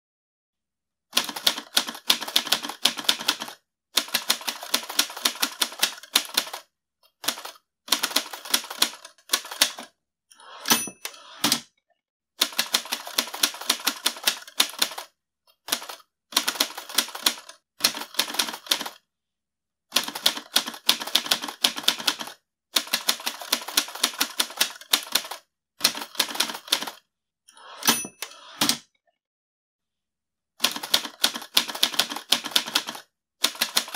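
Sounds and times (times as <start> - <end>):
typewriter bell ringing: 10.6 - 11.2, 27.8 - 28.4.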